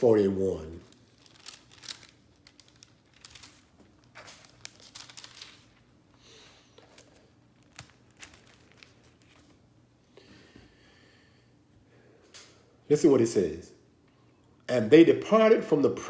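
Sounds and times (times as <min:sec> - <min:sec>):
thin pages turning: 0:00.6 - 0:09.7.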